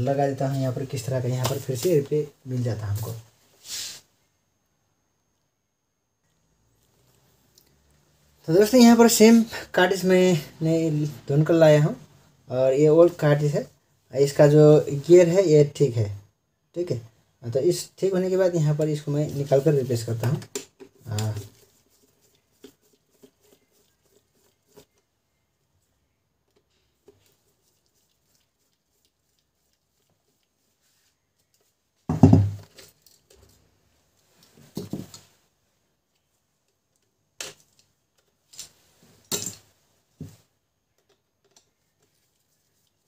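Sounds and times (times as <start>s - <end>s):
plastic parts knocking and clattering: 32.1s - 32.9s.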